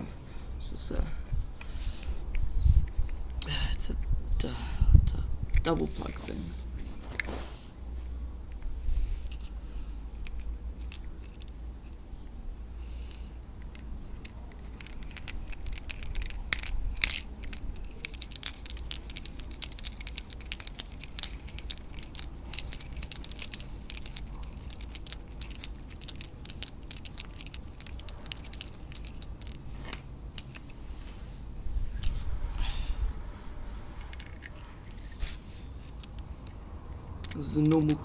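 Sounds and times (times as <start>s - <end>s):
plug parts clicking and scraping: 13.1s - 30.8s, 34.0s - 38.0s.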